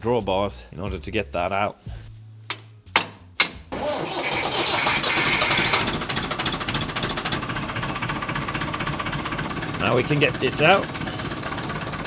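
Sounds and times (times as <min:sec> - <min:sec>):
tractor engine starting and running: 0:02.5 - 0:12.0.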